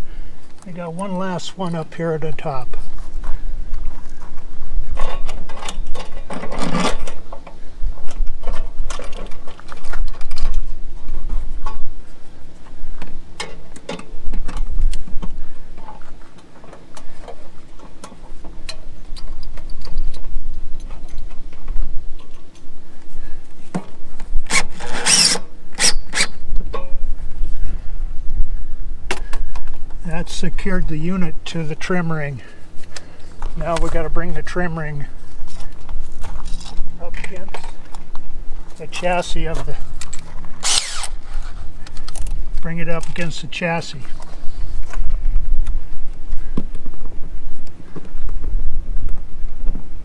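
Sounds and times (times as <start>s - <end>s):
tool clicking and scraping metal: 24.5s - 26.4s, 40.0s - 42.2s.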